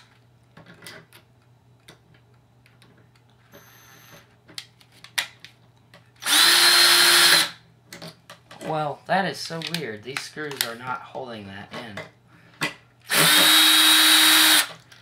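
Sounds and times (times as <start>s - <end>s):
power drill driving a screw: 6.2s - 7.6s, 13.1s - 14.7s.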